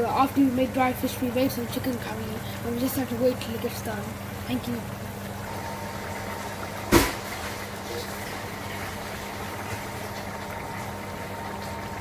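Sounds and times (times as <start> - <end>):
curry simmering in a pot: 0.0 - 12.0
faint hum: 0.0 - 12.0
sharp knock: 6.9 - 7.2.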